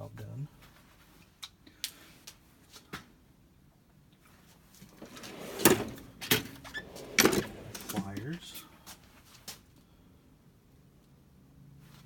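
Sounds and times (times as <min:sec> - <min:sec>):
drawers sliding on runners: 0:04.9 - 0:08.4
tool box drawer click: 0:05.0 - 0:08.2
metal drawer clunks: 0:05.0 - 0:08.3.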